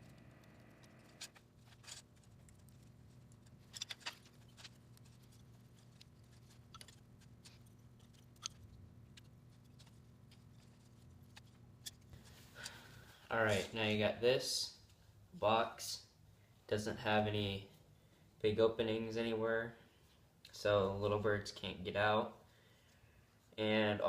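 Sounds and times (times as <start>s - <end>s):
wooden sticks clicking: 0.0s - 12.8s
faint low hum: 0.0s - 24.0s.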